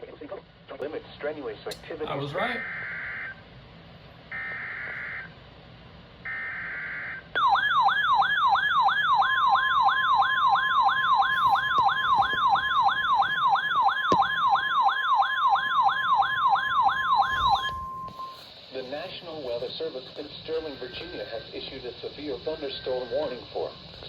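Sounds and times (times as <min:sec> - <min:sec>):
steady warning alarm tone: 0:02.4 - 0:03.4, 0:04.3 - 0:05.4, 0:06.2 - 0:24.0
sweeping siren-like alert tone: 0:02.4 - 0:03.4, 0:04.3 - 0:05.3, 0:06.3 - 0:18.4.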